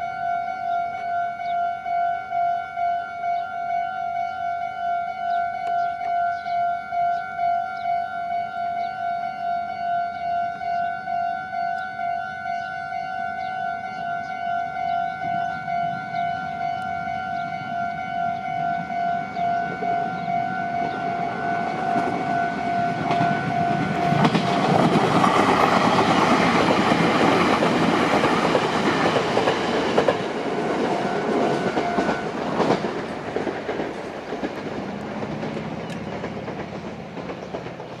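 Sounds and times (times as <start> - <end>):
level crossing warning bell: 0.0 - 33.7
train wheels on rails: 13.4 - 38.0.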